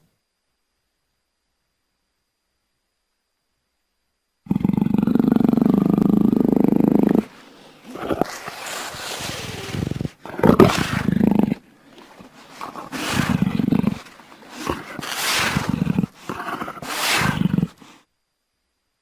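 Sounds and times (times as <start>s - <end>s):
jaguar roaring: 4.5s - 18.0s.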